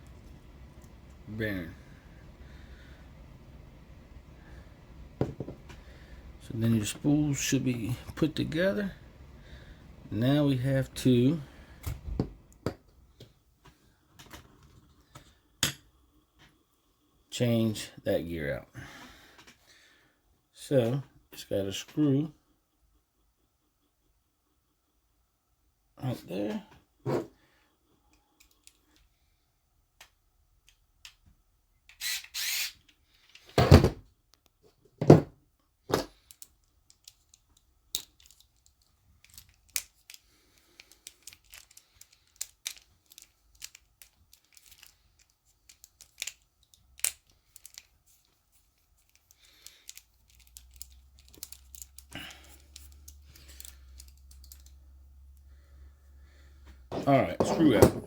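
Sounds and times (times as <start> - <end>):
low steady hum: 0.0 - 13.3
small tools clicking and tapping: 36.0 - 48.4, 49.0 - 54.8.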